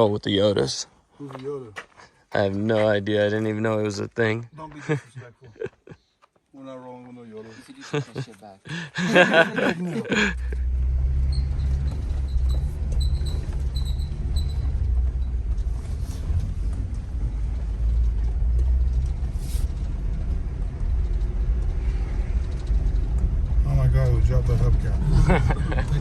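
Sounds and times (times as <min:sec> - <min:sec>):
vehicle engine and road noise: 0:06.9 - 0:26.0.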